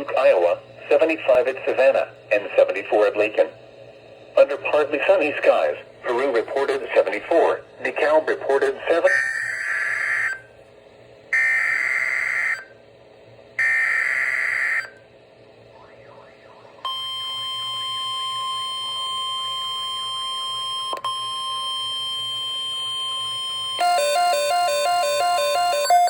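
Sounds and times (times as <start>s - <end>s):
buzzing digital data bursts: 13.6s - 14.8s.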